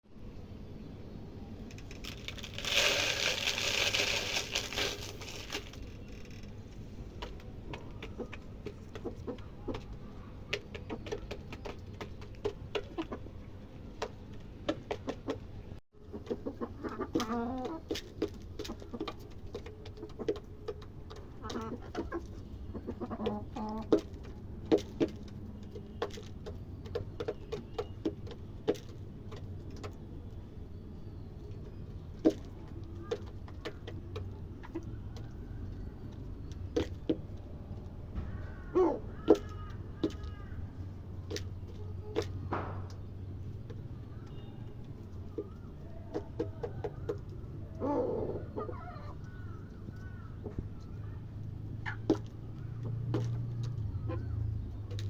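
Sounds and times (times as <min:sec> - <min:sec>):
loud rustling: 0:01.7 - 0:06.5
chickens clucking: 0:07.2 - 0:15.4, 0:16.0 - 0:30.0, 0:31.4 - 0:37.8, 0:44.8 - 0:51.0, 0:51.8 - 0:55.0.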